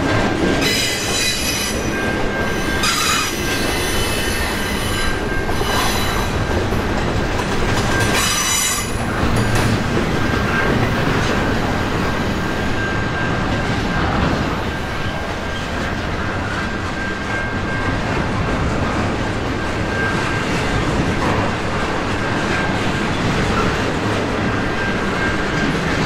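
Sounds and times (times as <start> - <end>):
freight train rumbling past: 0.0 - 26.0
wheel squeal: 0.6 - 6.6, 7.8 - 9.6.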